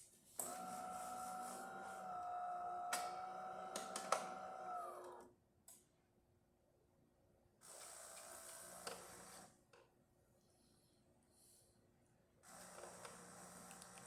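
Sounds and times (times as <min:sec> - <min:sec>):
coffee grinder grinding beans: 0:00.4 - 0:05.2.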